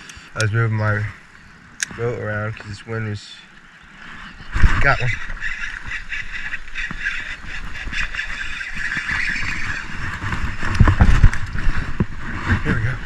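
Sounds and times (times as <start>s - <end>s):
wind buffeting microphone: 4.2s - 13.0s.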